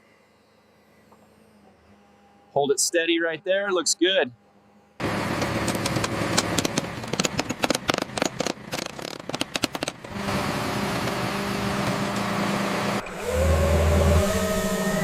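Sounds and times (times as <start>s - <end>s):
machine engine running: 5.0s - 15.0s
rapid clicks and crackles: 5.3s - 10.2s.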